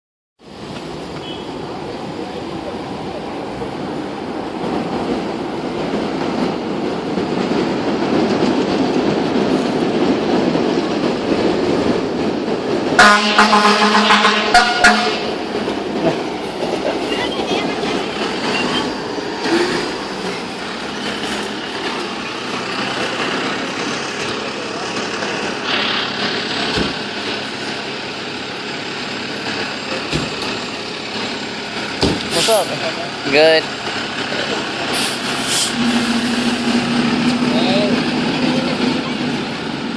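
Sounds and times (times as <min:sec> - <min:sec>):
heavy vehicle rumbling: 0:00.4 - 0:39.9
diesel engine running: 0:09.2 - 0:39.9.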